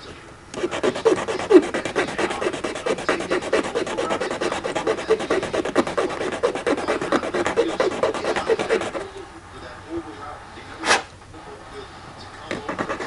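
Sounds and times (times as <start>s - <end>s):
plastic being scraped by hand: 0.5s - 9.2s, 12.5s - 13.0s.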